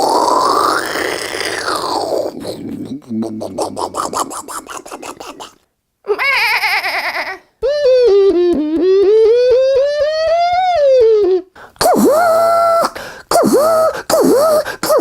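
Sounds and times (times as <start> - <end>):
wailing voice-like cry: 3.5 - 15.0.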